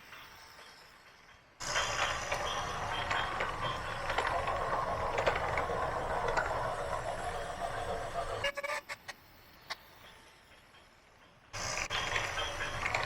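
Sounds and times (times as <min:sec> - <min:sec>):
heavy machinery engine rumble: 0:11.6 - 0:13.0.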